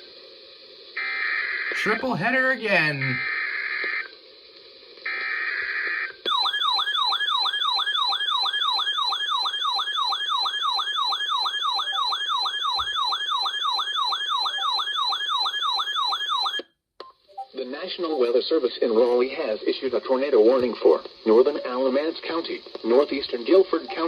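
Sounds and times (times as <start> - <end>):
buzzy digital data tones: 17.3 - 18.4, 23.8 - 24.0.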